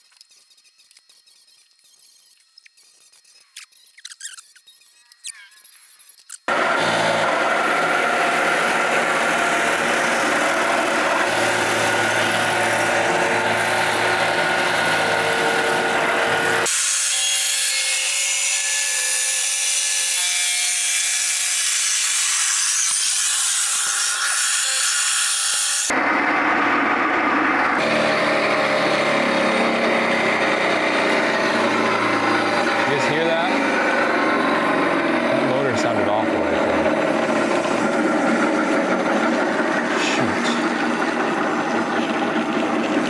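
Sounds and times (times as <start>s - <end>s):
sawmill engine drone: 6.5s - 16.8s, 25.9s - 43.0s
saw blade cutting log: 6.5s - 26.0s, 27.2s - 43.0s.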